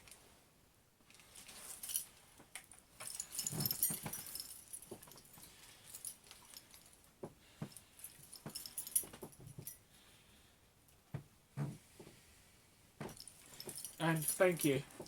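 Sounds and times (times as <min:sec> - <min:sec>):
handling clicks and rattling: 0:01.1 - 0:06.9, 0:13.0 - 0:15.0.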